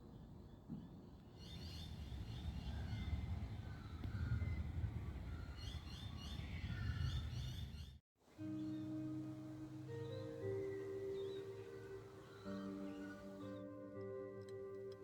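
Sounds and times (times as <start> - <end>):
low rumble of wind or traffic: 0.0 - 8.0
birds chirping: 0.0 - 13.8
music: 8.3 - 15.0.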